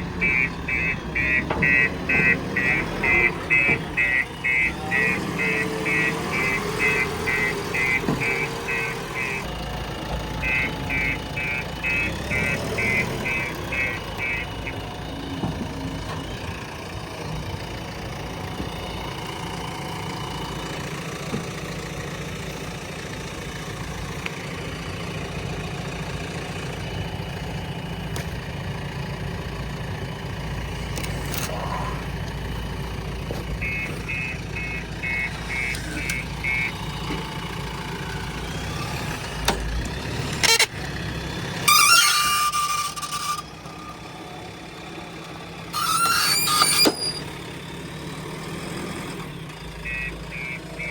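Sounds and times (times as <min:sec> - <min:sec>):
diesel engine idling rumble: 0:00.0 - 0:50.9
short high beeps: 0:33.6 - 0:36.7.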